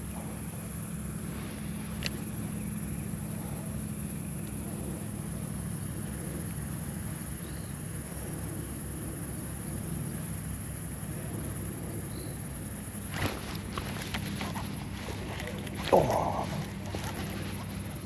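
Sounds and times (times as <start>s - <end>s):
low mechanical hum: 0.0s - 18.0s.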